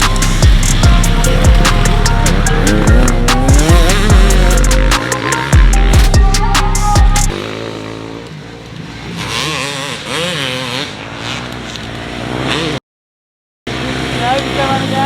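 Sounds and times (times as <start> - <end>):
background music: 0.0 - 7.7
motocross bike engines revving: 0.0 - 12.8, 13.7 - 15.0.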